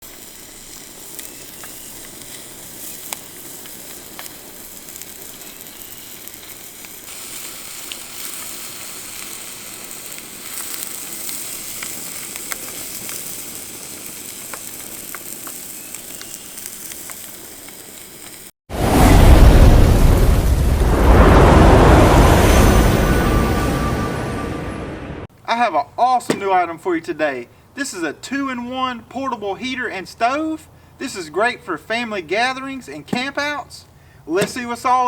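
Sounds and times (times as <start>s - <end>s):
food sizzling in a frying pan: 0.0s - 18.6s.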